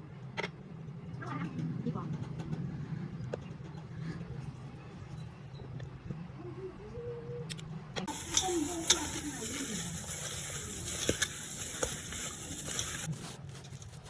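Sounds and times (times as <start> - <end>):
chicken sizzling in a pan: 8.1 - 13.1.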